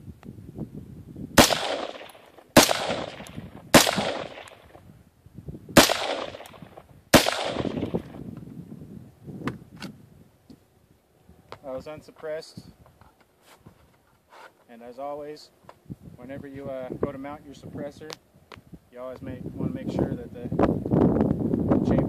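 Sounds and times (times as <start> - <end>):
rifle shots echoing: 1.4 - 4.8, 5.8 - 8.1.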